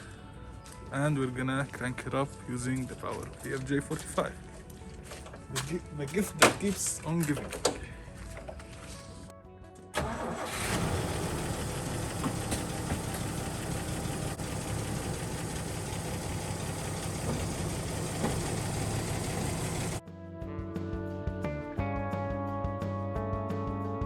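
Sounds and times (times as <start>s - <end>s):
vehicle engine idling: 10.0s - 20.0s.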